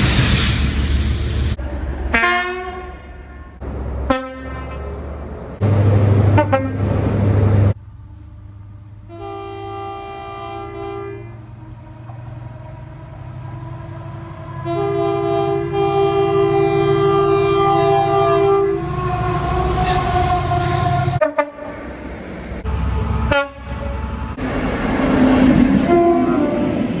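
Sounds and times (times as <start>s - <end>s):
train rumble: 0.0s - 2.2s, 5.0s - 27.0s
train horn chord: 13.7s - 21.8s, 25.6s - 27.0s.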